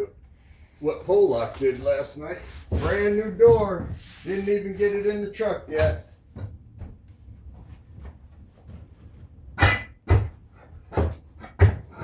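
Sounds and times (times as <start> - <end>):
objects being handled: 0.6 - 9.5.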